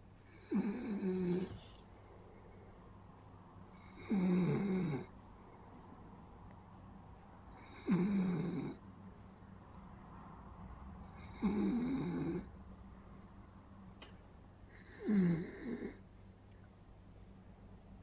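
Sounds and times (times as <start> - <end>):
dog snoring: 0.2 - 1.7, 3.7 - 5.1, 7.5 - 9.4, 11.1 - 12.5, 14.7 - 16.0.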